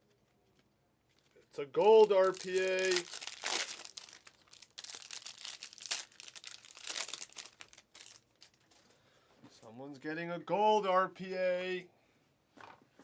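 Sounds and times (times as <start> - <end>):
crinkling of card packaging: 0.5 - 9.0.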